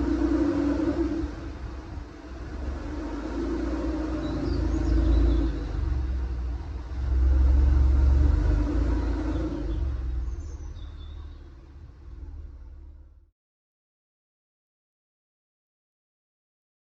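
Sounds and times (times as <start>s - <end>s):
car engine rumbling: 0.0s - 13.3s.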